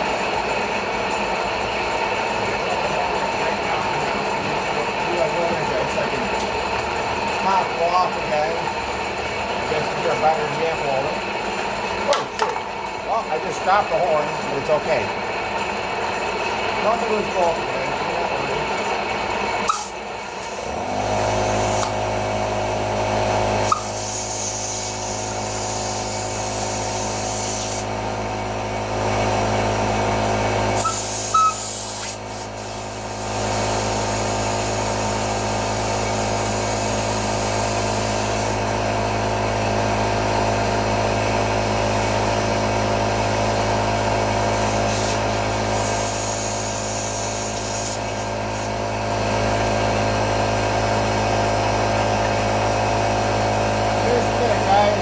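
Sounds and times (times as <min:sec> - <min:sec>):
air compressor humming: 0:00.0 - 0:55.0
short clicks: 0:19.7 - 0:20.0.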